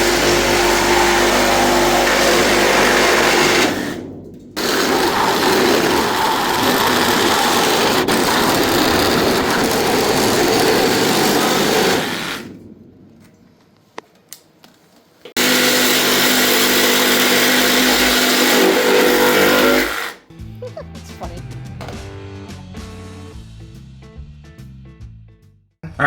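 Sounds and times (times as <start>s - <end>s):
power tool on metal: 0.0s - 4.0s, 4.6s - 12.6s, 15.4s - 20.2s.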